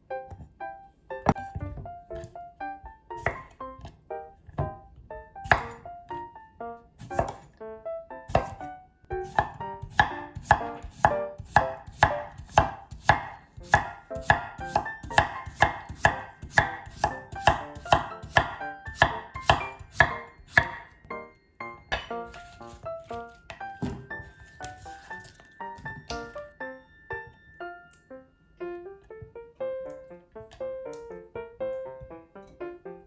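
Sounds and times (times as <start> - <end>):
soft piano music: 0.0 - 33.0
knife chopping on cutting board: 1.3 - 2.4, 3.2 - 6.2, 7.0 - 7.6, 8.3 - 21.0, 21.9 - 26.4.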